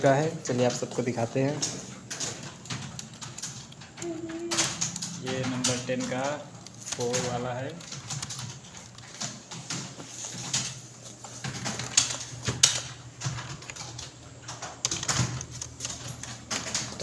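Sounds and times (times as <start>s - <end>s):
keyboard typing clicks: 1.6s - 9.5s, 11.5s - 17.0s.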